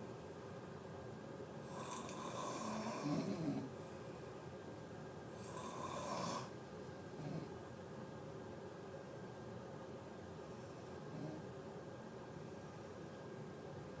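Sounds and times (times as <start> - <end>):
person snoring: 1.7 - 3.7, 5.4 - 6.5.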